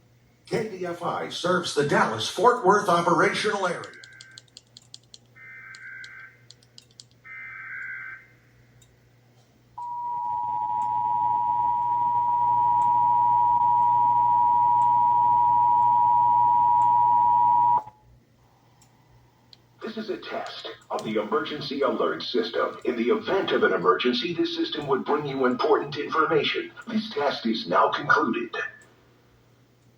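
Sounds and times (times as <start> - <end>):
broadcast hiss: 0.0 - 4.5, 19.5 - 29.6
two-tone attention signal: 9.8 - 17.9.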